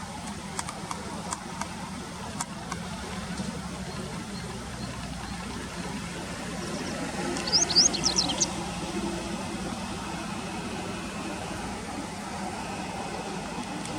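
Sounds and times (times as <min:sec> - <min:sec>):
steady low rumble: 0:00.0 - 0:13.9
bird high chirps: 0:06.6 - 0:08.6.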